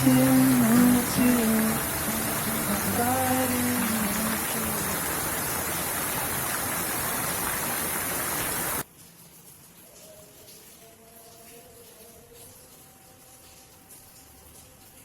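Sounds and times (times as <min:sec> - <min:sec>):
soft music with sung note: 0:00.0 - 0:05.3, 0:09.8 - 0:15.0
heavy rain pouring: 0:00.0 - 0:15.0.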